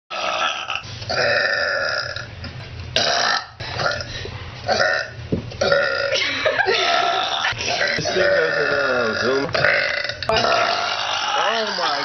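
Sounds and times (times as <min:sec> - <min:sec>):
girls burping: 0:04.7 - 0:12.0.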